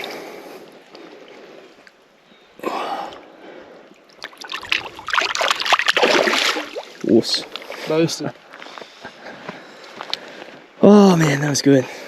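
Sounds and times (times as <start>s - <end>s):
water trickling and sloshing: 3.1s - 8.2s
fish splashing: 3.9s - 7.9s.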